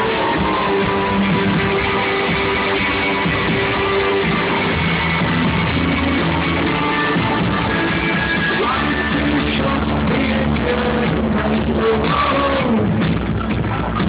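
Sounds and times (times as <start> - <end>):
person singing: 0.0 - 13.0
guitar: 0.0 - 14.0
rock band playing live: 0.0 - 14.0.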